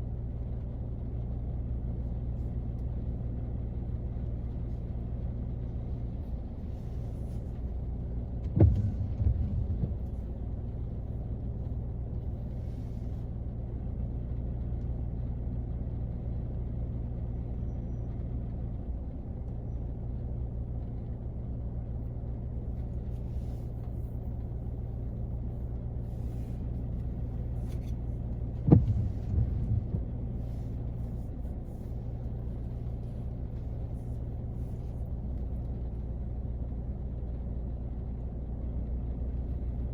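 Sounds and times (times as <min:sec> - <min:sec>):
loud thumps: 0:08.4 - 0:10.5, 0:28.5 - 0:31.2
rain on a car: 0:28.6 - 0:31.2.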